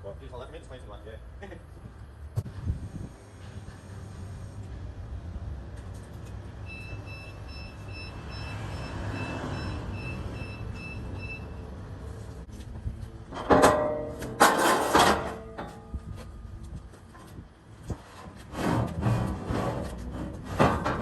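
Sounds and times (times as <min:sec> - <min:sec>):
reversing alarm beeping: 0:06.6 - 0:11.7
loud clatter: 0:13.4 - 0:15.8.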